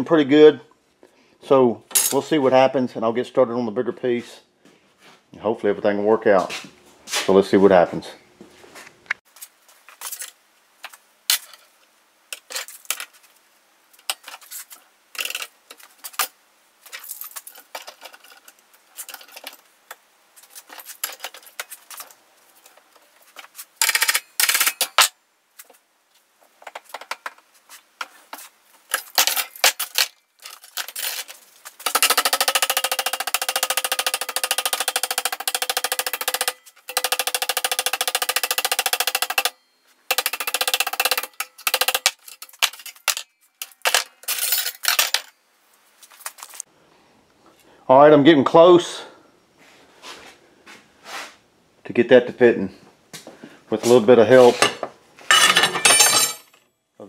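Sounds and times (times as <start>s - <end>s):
power tool rattling on metal: 28.9s - 45.3s.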